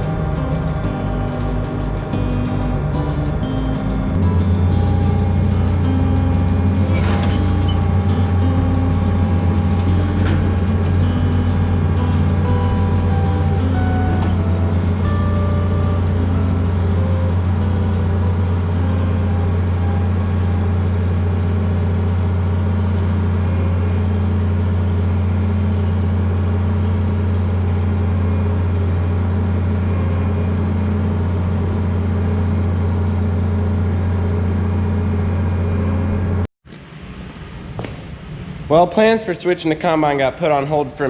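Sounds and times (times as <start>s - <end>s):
diesel engine humming: 0.0s - 36.5s.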